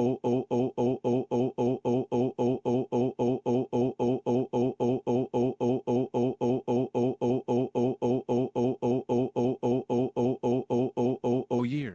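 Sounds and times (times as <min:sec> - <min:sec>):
computer voice repeating a word: 0:11.6 - 0:11.9.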